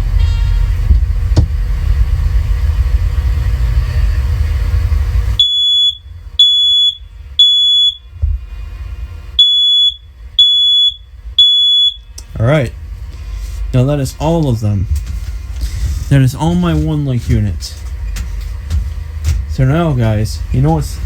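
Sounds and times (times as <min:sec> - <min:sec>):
loud low rumble: 0:00.0 - 0:06.4, 0:12.0 - 0:21.0
smoke alarm beeps: 0:05.4 - 0:08.2, 0:09.4 - 0:12.2.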